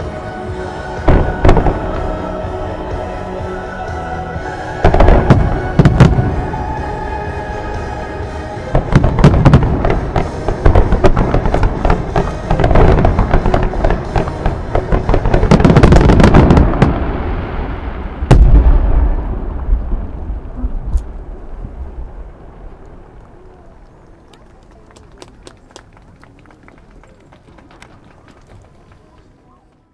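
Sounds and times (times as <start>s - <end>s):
music: 0.0s - 17.3s
fireworks bursting: 4.5s - 29.4s
heavy firework boom: 4.8s - 6.6s, 8.6s - 23.2s.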